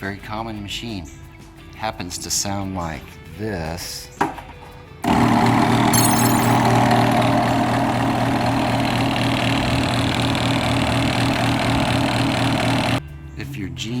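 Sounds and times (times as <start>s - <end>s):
garage door opener motor running: 6.7s - 13.0s.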